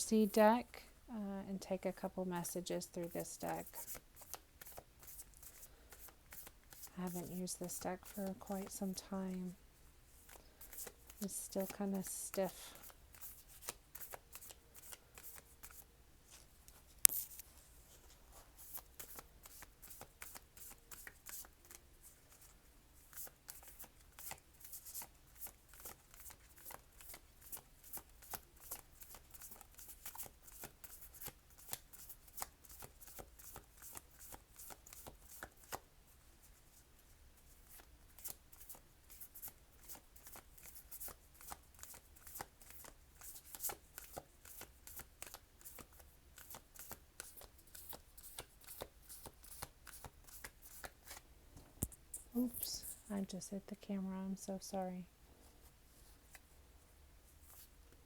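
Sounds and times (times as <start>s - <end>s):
cards being shuffled: 3.0s - 8.8s, 10.2s - 12.1s, 12.8s - 35.8s, 37.6s - 51.2s.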